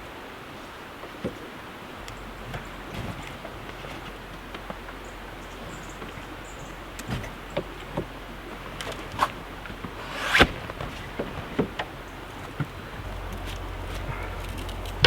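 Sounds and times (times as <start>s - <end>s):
camp gear knocking and clattering: 1.1s - 15.0s.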